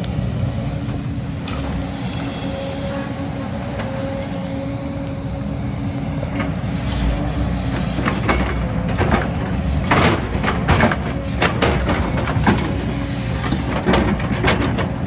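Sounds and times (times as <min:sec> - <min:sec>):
excavator diesel engine running: 0:00.0 - 0:15.0
sharp knocks and clatter: 0:07.8 - 0:15.0.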